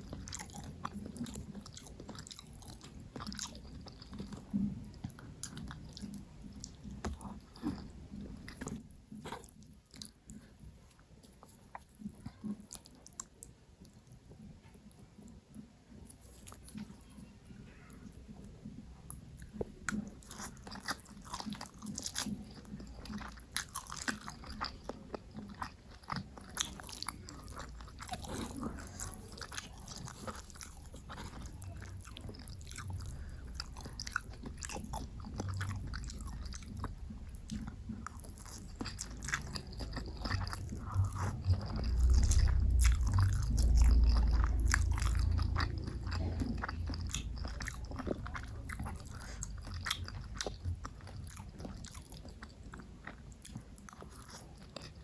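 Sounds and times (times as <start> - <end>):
person chewing and biting: 0.0 - 14.2, 19.1 - 55.0
low rumble: 27.6 - 50.9.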